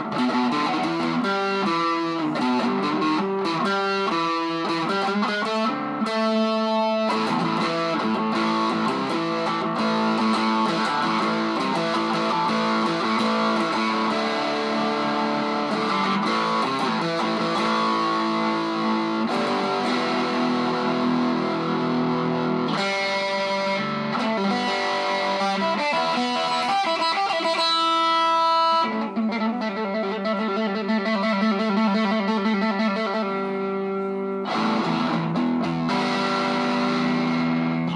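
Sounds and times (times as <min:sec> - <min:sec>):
overdriven electric guitar: 0:00.0 - 0:37.9.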